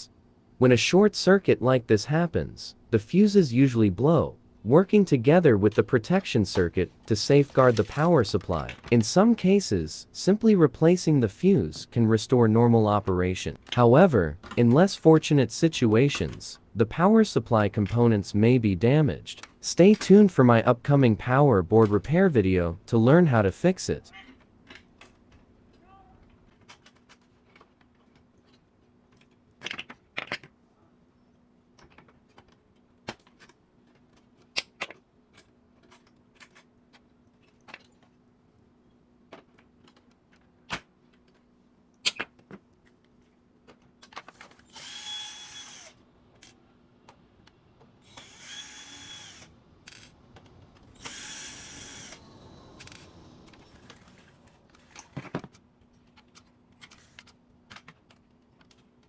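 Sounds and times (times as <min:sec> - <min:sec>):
plastic parts and screws clicking: 0:24.4 - 0:30.6, 0:31.8 - 0:38.2, 0:42.0 - 0:52.2, 0:52.8 - 0:59.0
electric screwdriver whining: 0:44.6 - 0:46.0, 0:48.0 - 0:50.1, 0:50.9 - 0:53.1.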